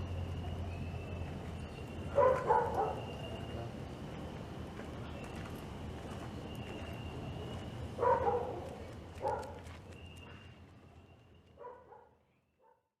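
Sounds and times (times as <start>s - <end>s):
low background noise: 0.0s - 12.6s
dog barking: 2.1s - 3.2s, 8.0s - 9.6s, 11.6s - 12.9s.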